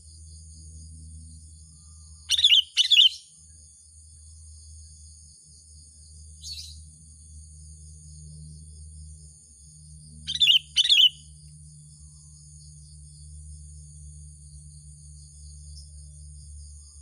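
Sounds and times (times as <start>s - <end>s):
bulbul chirpy calls: 2.2s - 3.2s, 10.3s - 11.2s.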